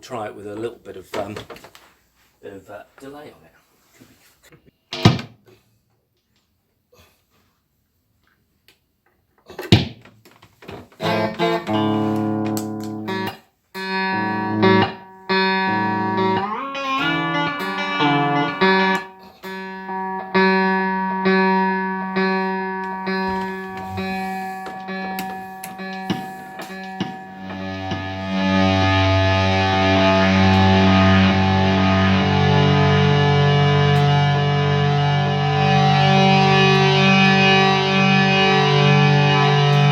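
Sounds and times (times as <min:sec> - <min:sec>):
fuzzed electric guitar: 0:11.0 - 0:39.9.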